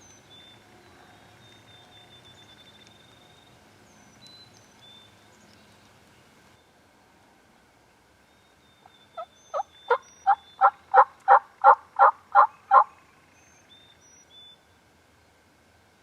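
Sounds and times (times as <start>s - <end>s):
turkey yelping: 9.2s - 12.9s.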